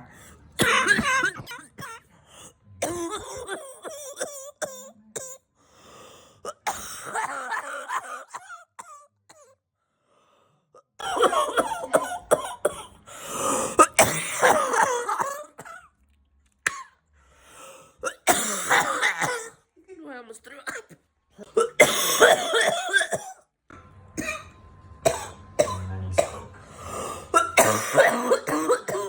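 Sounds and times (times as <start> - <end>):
person coughing: 0.6 - 2.1, 2.8 - 5.4, 6.5 - 8.6, 11.0 - 15.9, 18.0 - 19.6, 20.7 - 23.4, 25.1 - 29.0.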